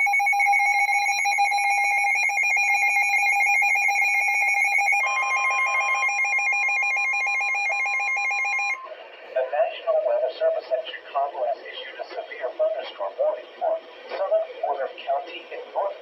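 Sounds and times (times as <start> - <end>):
steady alarm tone: 0.0 - 9.0
warbling electronic alarm tone: 0.0 - 9.0.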